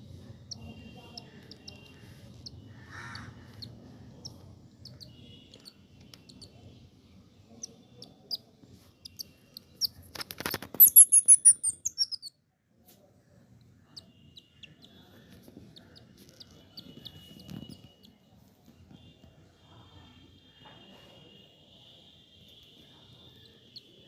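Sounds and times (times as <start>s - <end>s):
squirrel chirping: 0.4s - 6.6s, 7.5s - 12.3s, 13.9s - 18.2s.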